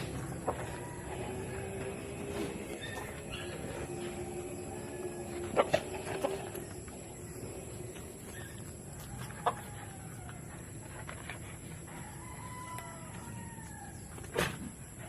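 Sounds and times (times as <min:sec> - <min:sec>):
rooster crowing: 0:00.0 - 0:07.9, 0:08.8 - 0:10.6, 0:11.9 - 0:14.2.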